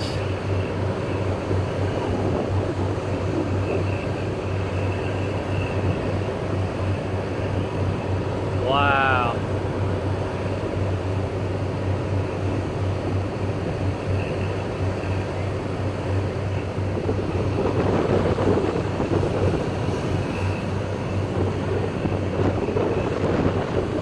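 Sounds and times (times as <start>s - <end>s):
wind rushing over microphone: 16.7s - 24.0s.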